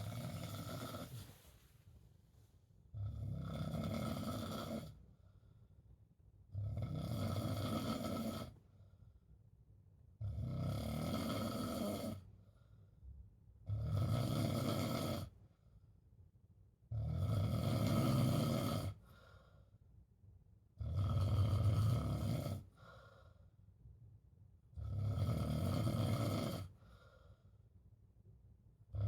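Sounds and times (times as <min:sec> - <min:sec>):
person snoring: 0:00.0 - 0:01.3.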